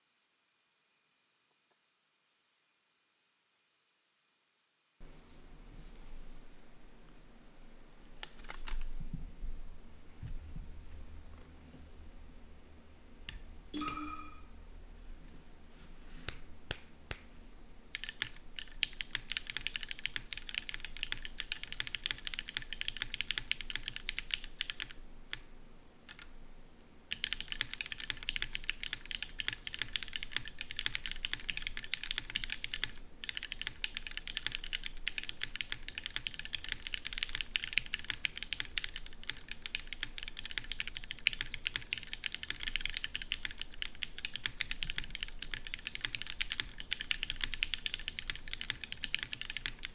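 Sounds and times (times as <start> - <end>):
mechanical keyboard typing: 17.9 - 25.5, 26.1 - 26.3, 27.1 - 49.9.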